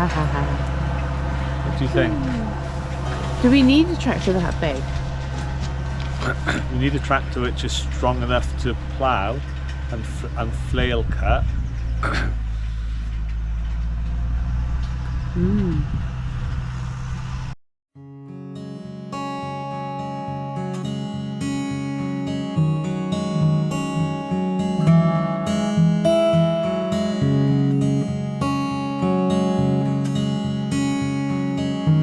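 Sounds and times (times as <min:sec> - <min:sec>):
strummed acoustic guitar music: 0:00.0 - 0:10.3, 0:18.0 - 0:32.0
tractor engine running: 0:00.0 - 0:15.5.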